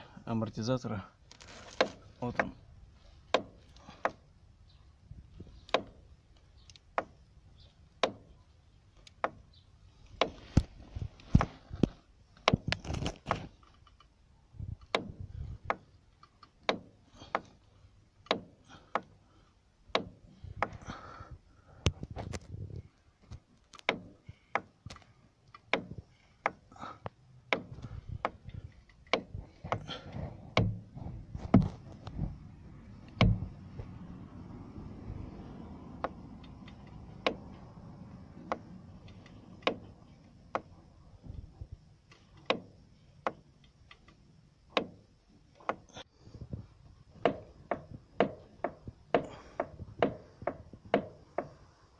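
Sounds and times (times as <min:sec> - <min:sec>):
sharp knocking from car suspension: 0:33.2 - 0:33.5, 0:47.2 - 0:51.6.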